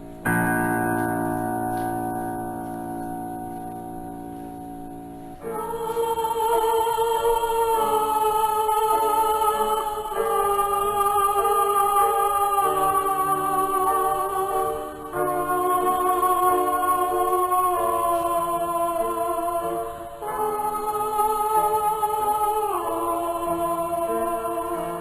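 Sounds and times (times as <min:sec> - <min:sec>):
sustained instrumental chord: 0:00.0 - 0:06.3
choir singing held notes: 0:05.4 - 0:25.0.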